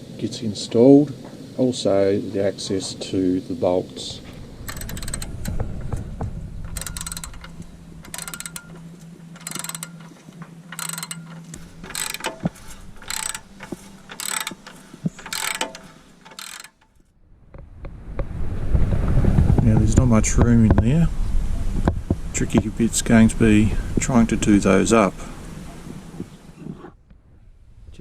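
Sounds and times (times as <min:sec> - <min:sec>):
steady low hum: 0:00.0 - 0:28.0
ratchet spanner clicking: 0:04.6 - 0:05.7, 0:06.7 - 0:17.0.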